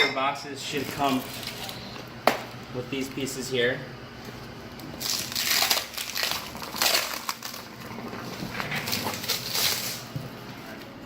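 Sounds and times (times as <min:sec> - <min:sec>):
protective wrapping crinkling: 0:05.0 - 0:10.1.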